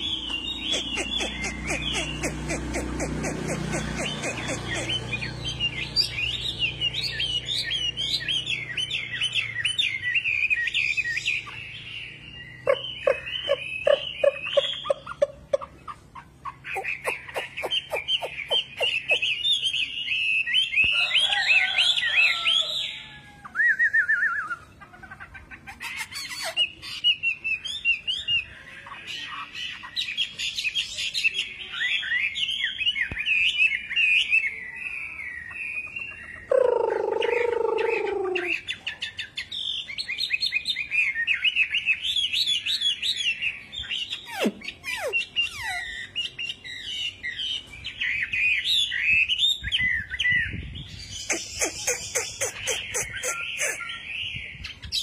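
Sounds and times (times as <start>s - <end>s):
bird singing whistled phrases: 4.8s - 15.0s, 22.6s - 24.7s.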